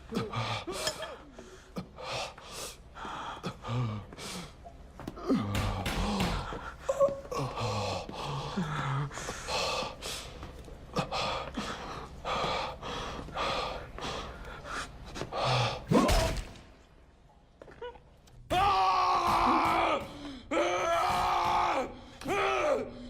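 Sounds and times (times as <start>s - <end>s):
man gasping and breathing hard: 0.0s - 16.1s, 20.0s - 21.2s.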